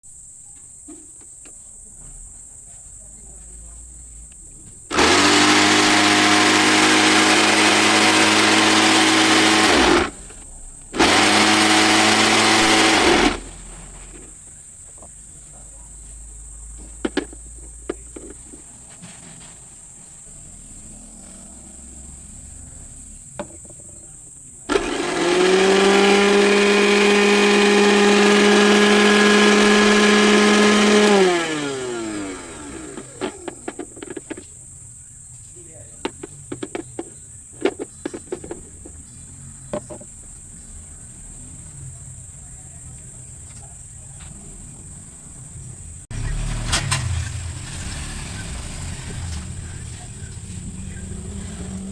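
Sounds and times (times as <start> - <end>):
mixer grinder motor running: 4.9 - 14.3, 24.7 - 34.4.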